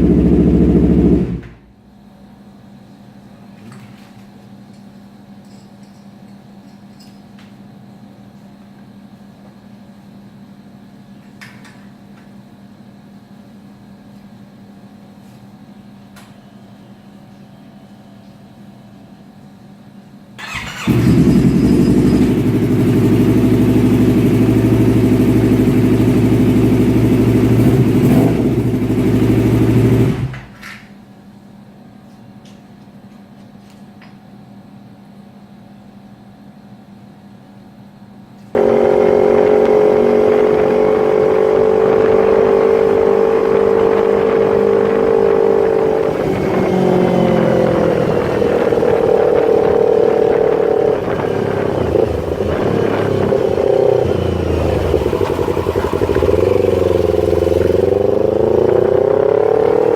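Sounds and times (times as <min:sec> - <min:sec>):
motorcycle engine revving: 0:00.0 - 0:01.6, 0:20.4 - 0:30.5, 0:38.6 - 0:59.9.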